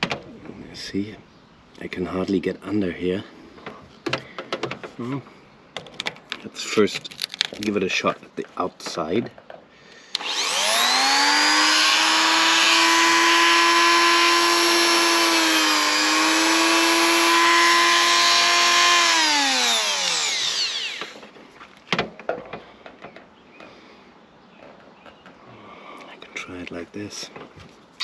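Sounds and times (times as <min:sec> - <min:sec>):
rotary tool grinding whine: 0:10.1 - 0:21.4.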